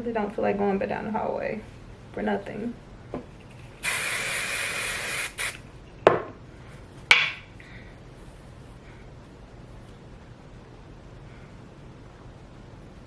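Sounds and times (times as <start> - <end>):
spray can hissing: 3.8 - 5.6.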